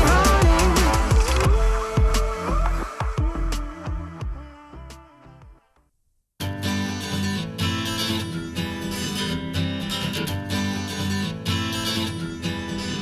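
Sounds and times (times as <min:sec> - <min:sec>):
strummed acoustic guitar: 0:00.0 - 0:03.6, 0:06.4 - 0:13.0.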